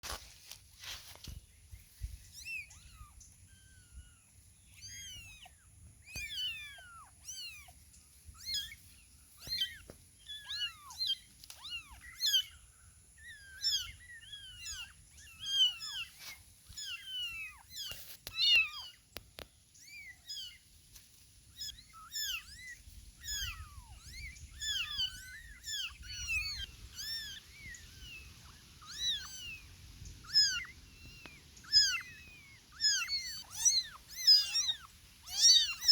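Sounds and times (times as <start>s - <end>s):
kittens mewing: 13.2s - 18.9s, 21.6s - 35.9s.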